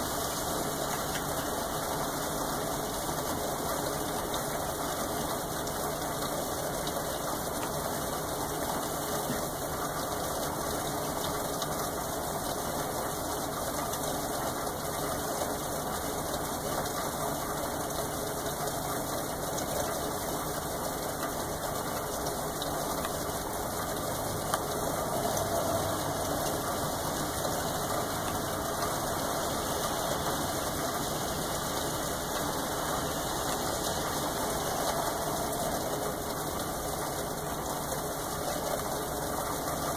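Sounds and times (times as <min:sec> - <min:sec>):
steady rainfall: 0:00.0 - 0:39.9.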